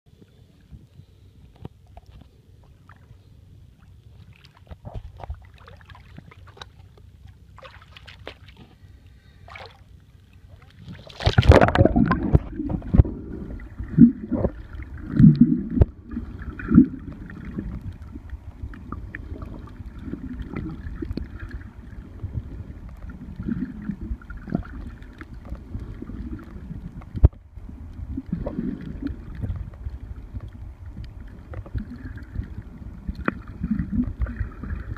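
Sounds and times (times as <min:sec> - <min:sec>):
water sloshing around boat: 0:00.2 - 0:34.9
knocks and splashes: 0:04.2 - 0:07.0, 0:07.6 - 0:08.8, 0:10.6 - 0:13.2.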